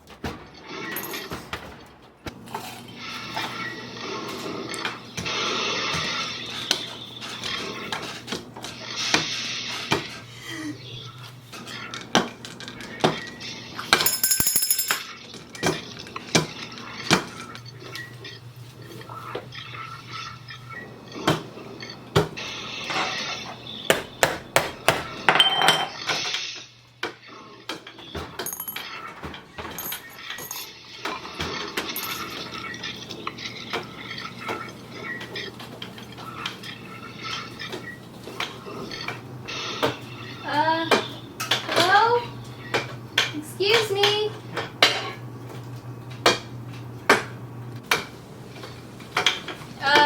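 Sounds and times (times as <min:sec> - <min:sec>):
hard objects clinking and knocking: 0:13.9 - 0:15.8, 0:28.2 - 0:30.8, 0:31.8 - 0:32.5.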